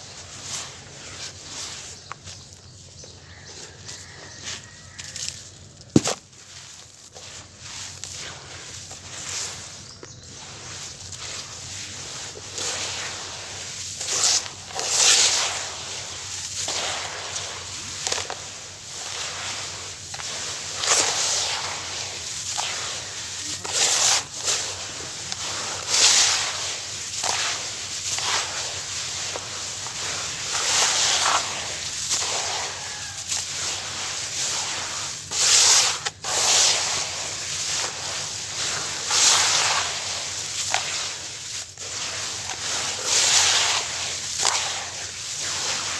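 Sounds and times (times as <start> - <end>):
gritty crunching and squelching: 3.3 - 9.6.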